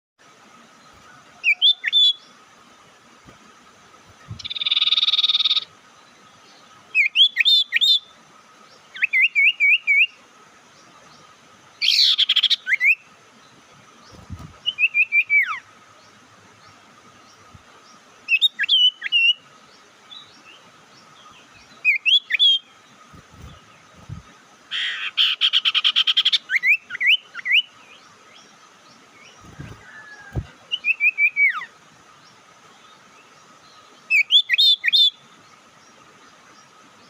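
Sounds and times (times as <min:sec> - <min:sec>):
bird harsh buzzy scolding calls: 0:00.8 - 0:10.6, 0:11.3 - 0:20.0, 0:20.6 - 0:27.8, 0:29.0 - 0:33.1.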